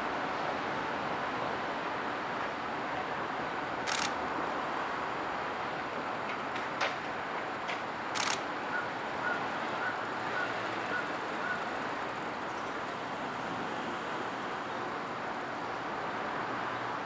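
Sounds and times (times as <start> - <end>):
sharp clicks: 3.8 - 4.2, 8.2 - 8.4.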